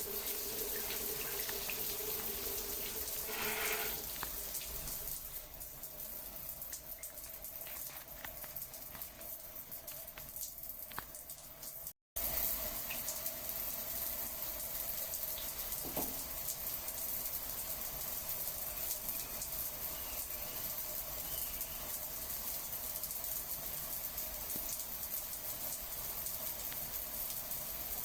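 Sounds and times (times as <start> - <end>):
running water rushing: 0.0 - 11.1.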